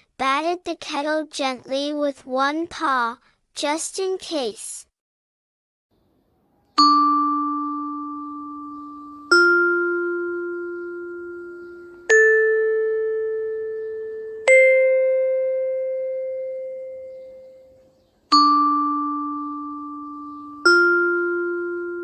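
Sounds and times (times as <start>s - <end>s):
bell-like notes ringing: 6.8s - 22.0s.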